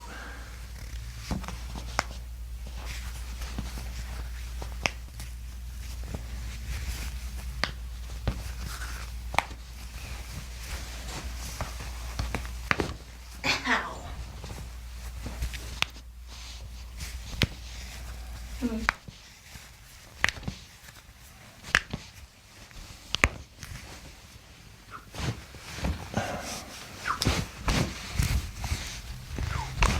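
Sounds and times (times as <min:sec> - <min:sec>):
low steady hum: 0:00.0 - 0:29.9
shuffling and handling noises: 0:00.1 - 0:29.9.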